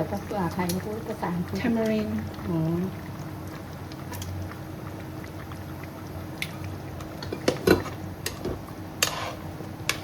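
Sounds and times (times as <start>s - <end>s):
steady low hum: 0.0s - 10.0s
utensil scraping a pot: 9.0s - 9.5s.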